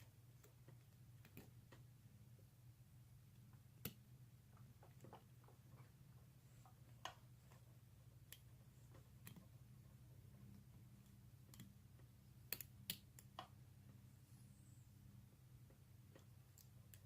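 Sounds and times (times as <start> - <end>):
faint low hum: 0.0 - 17.0.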